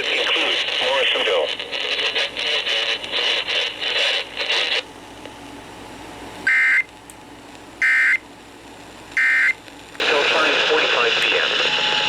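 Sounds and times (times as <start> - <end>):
crackling radio signal: 0.0 - 4.9, 9.2 - 12.0.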